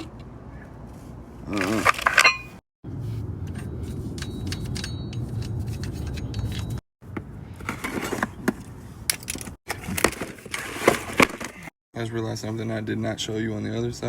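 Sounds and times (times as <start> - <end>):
metal tools clinking and scraping: 1.6 - 2.6, 3.5 - 6.8.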